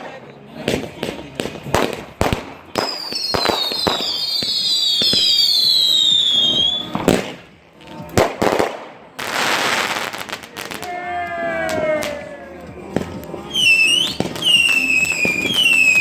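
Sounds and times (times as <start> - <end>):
firework bangs: 0.6 - 11.0, 12.9 - 16.0
whistling firework shells: 2.8 - 7.1, 13.5 - 16.0.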